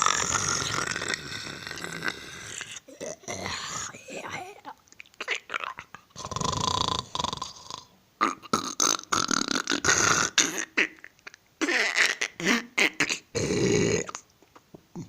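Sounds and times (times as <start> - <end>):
person snoring: 0.0 - 4.4, 6.2 - 10.7, 12.4 - 14.2.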